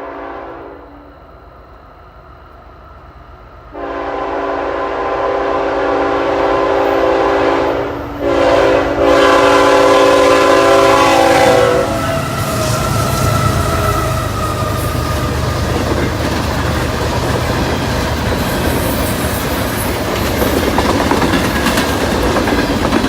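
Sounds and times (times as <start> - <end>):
locomotive air horn blasts: 0.0 - 1.0, 3.7 - 15.4
low train rumble: 0.0 - 23.0.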